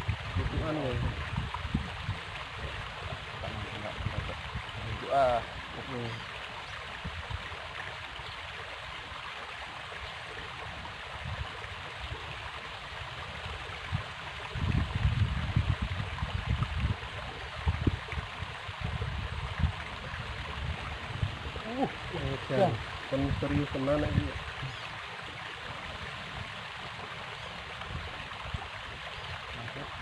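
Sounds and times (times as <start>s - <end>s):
low rumbling on microphone: 0.0s - 5.9s, 14.5s - 25.0s
river water rushing: 16.8s - 30.0s.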